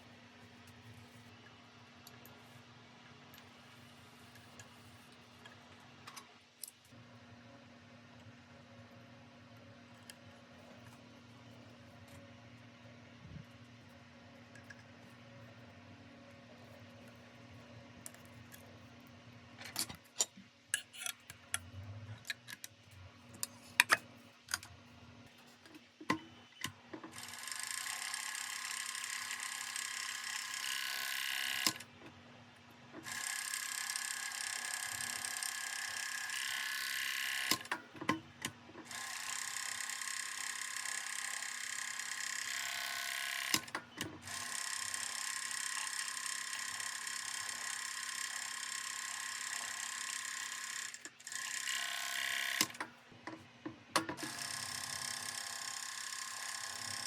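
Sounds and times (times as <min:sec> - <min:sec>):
sewing machine running: 0:27.1 - 0:31.8, 0:33.0 - 0:37.7, 0:38.9 - 0:52.8, 0:54.2 - 0:57.0.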